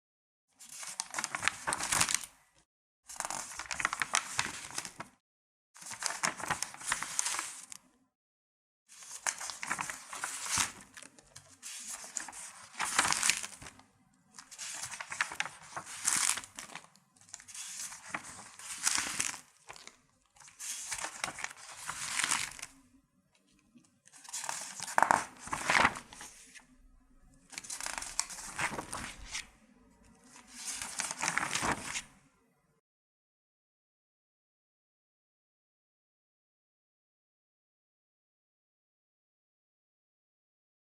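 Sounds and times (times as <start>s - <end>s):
paper sheets rustling: 0.7s - 2.3s, 3.2s - 5.1s, 5.8s - 7.8s, 9.0s - 13.8s, 14.4s - 22.7s, 24.1s - 26.6s, 27.5s - 29.5s, 30.3s - 32.1s.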